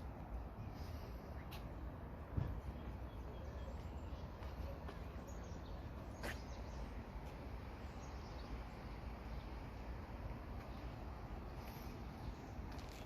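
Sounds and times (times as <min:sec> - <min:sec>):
public space ambient noise: 0:00.0 - 0:13.0.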